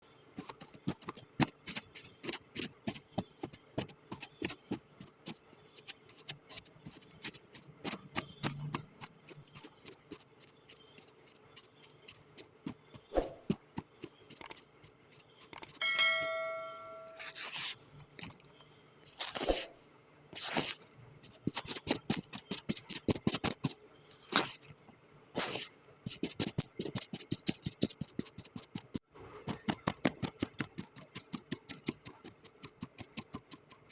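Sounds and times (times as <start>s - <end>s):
knife cutting sand: 0.4s - 15.8s, 19.2s - 19.8s, 20.4s - 24.7s, 25.4s - 28.9s
short ringing tone: 15.8s - 17.4s.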